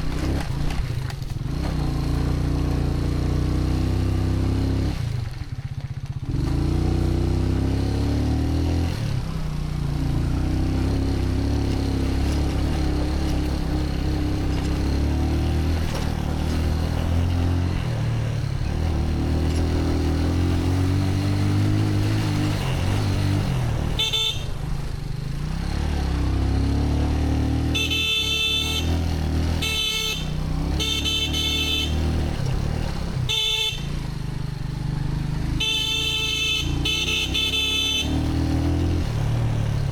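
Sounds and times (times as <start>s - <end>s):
car horn honking: 23.9s - 24.7s, 27.6s - 32.3s, 33.2s - 34.1s, 35.5s - 38.6s.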